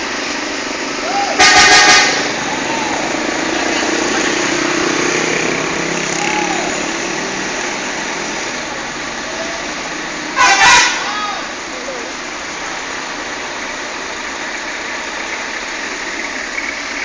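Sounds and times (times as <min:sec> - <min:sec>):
tyres passing on road: 0:00.0 - 0:17.0
vehicle engines running: 0:00.0 - 0:17.0.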